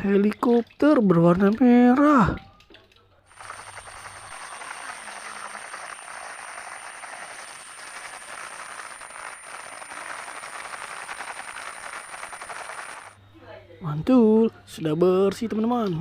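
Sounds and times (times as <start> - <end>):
thin high whine: 3.3 - 13.2.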